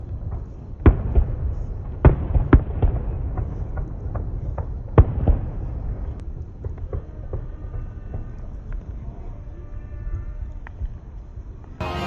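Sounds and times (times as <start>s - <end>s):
fireworks booming bangs: 0.0s - 8.7s
fireworks cracks: 0.0s - 9.0s.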